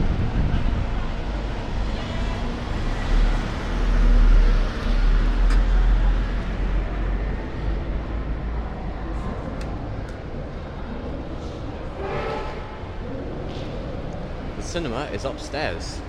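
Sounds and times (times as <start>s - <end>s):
low rumble: 0.0s - 10.0s
wind buffeting microphone: 0.0s - 12.0s.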